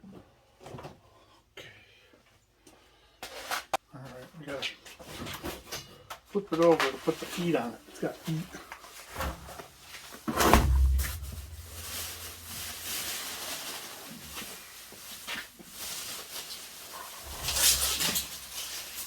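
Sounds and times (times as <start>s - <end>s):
heavy tank thumping on floor: 10.3s - 12.9s.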